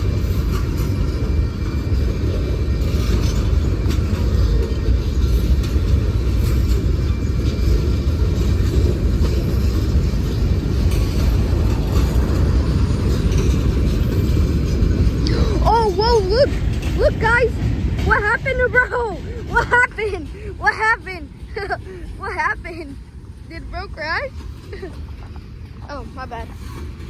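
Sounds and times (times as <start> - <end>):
train wheels rumbling on rails: 0.0 - 27.0.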